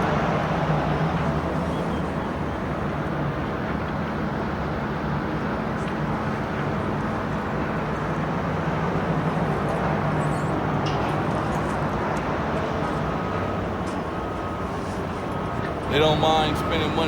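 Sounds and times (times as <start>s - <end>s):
machinery engines humming: 0.0s - 17.0s.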